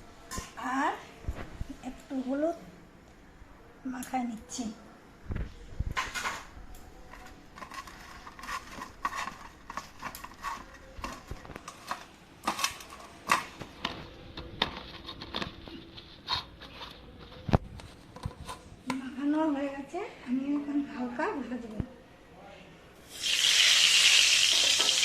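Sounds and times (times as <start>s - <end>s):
food pieces mixed by hand in a dish: 7.1s - 18.6s.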